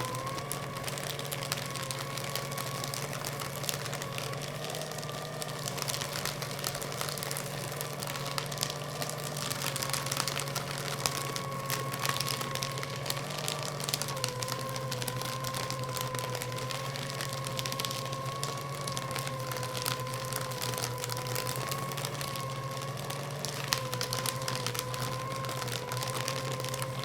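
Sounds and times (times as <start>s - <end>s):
paper shredder running: 0.0s - 27.0s.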